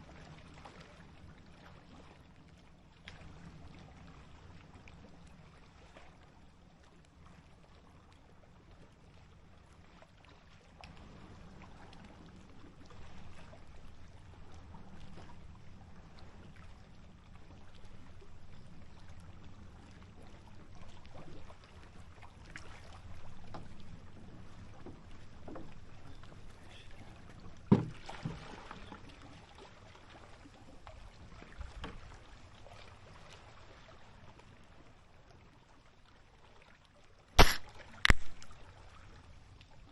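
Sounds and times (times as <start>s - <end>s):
small waves lapping on shore: 0.0s - 39.9s
sharp knock: 37.4s - 38.4s.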